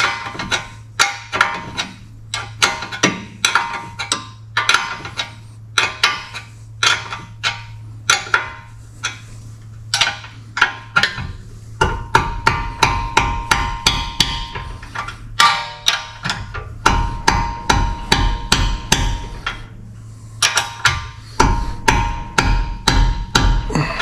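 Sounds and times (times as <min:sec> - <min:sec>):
hammer striking metal: 0:00.0 - 0:09.2, 0:10.0 - 0:19.8, 0:20.4 - 0:24.0
low steady hum: 0:00.0 - 0:24.0.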